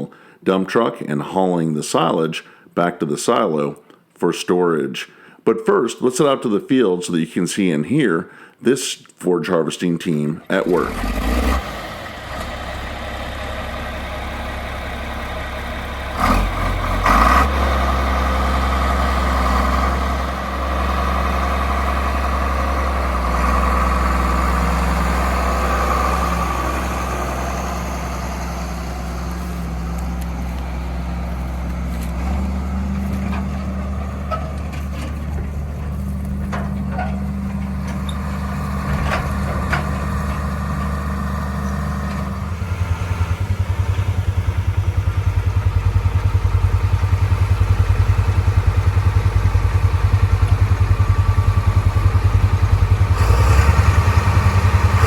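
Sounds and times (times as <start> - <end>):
tractor diesel engine under load: 0.0 - 2.2, 10.1 - 55.0
forage harvester chopping corn: 10.6 - 11.9, 53.1 - 55.0.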